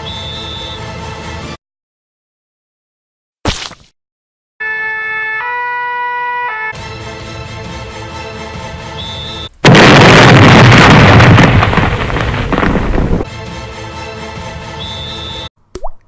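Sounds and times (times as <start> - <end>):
background music: 0.0 - 1.6, 6.7 - 9.5, 13.3 - 15.5
loud explosion-like noise: 9.6 - 13.3.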